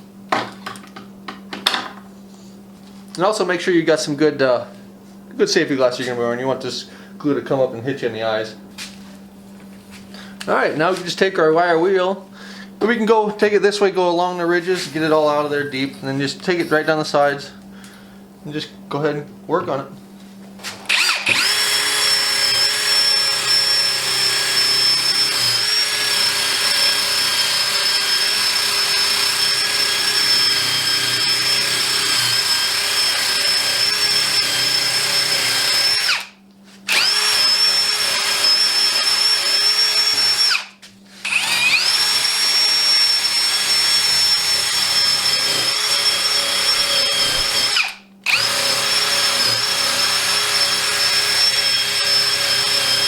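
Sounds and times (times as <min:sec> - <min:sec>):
drill with wire wheel whining: 0:20.9 - 0:53.0.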